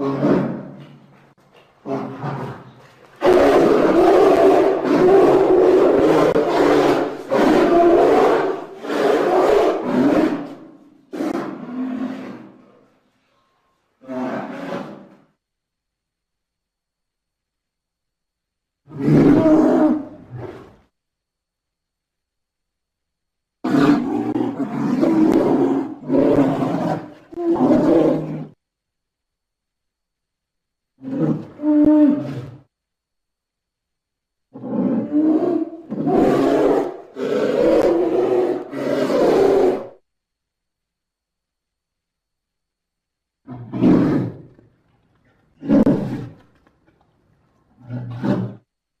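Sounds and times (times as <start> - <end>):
polar bear roaring: 0.0 - 0.8, 1.8 - 12.7, 14.0 - 15.2, 18.9 - 20.8, 23.6 - 28.6, 31.0 - 32.7, 34.5 - 40.0, 43.4 - 44.6, 45.6 - 46.4, 47.8 - 48.7.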